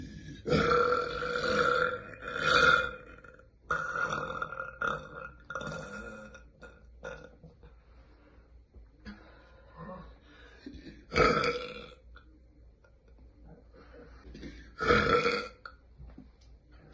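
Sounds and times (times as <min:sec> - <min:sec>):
woman burping loudly: 0:00.0 - 0:07.4, 0:10.8 - 0:12.0, 0:14.4 - 0:15.8.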